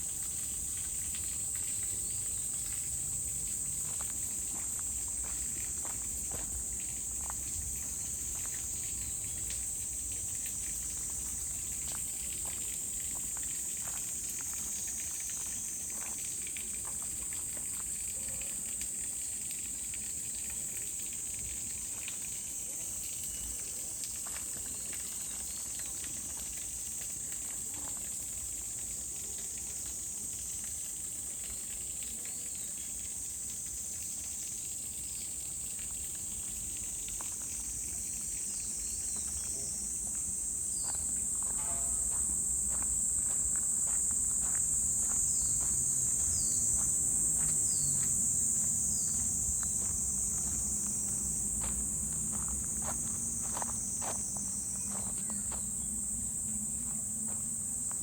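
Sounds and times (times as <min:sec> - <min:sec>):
insect chorus drone: 0:00.0 - 0:58.0
light footsteps: 0:03.5 - 0:08.8, 0:39.1 - 0:55.8.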